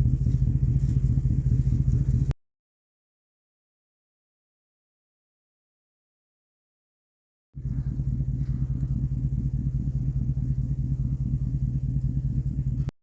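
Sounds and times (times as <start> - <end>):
truck engine running: 0.0 - 2.4, 7.6 - 13.0.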